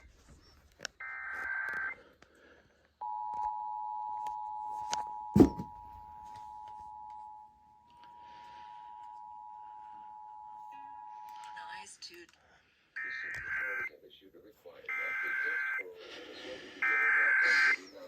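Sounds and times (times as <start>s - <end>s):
loud thump: 5.4s - 5.8s.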